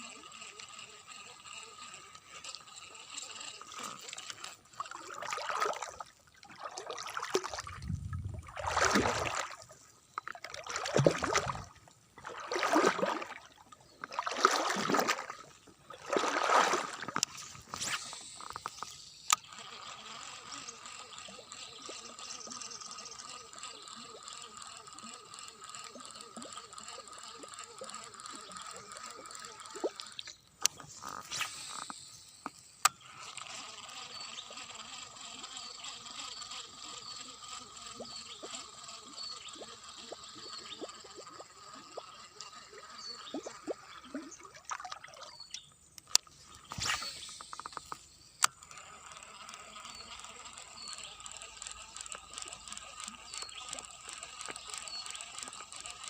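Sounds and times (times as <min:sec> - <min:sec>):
sharp clicks: 0:44.9 - 0:56.0.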